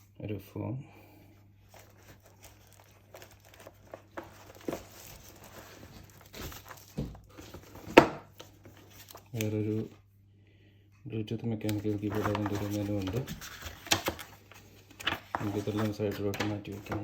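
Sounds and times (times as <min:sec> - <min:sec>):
foam and paper rustling: 0:01.7 - 0:09.9, 0:11.7 - 0:17.0.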